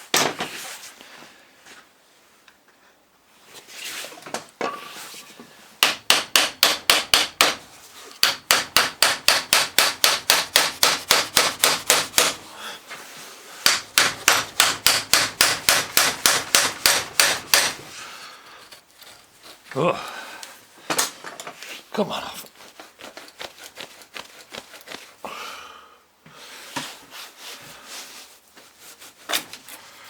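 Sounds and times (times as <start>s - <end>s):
rapid hammer blows on metal: 8.2s - 12.4s, 13.6s - 17.8s.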